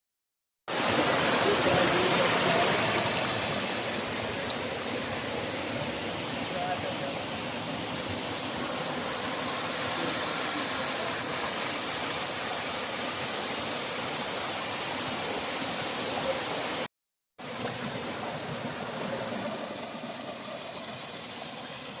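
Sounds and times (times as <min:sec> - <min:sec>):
waterfall rushing: 0:00.7 - 0:16.9.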